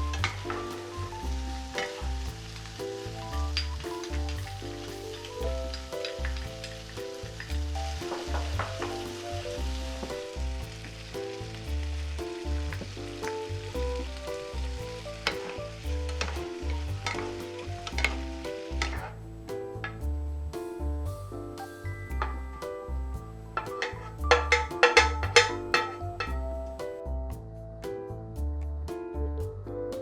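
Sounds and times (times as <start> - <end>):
food sizzling in a pan: 0.3 - 19.1.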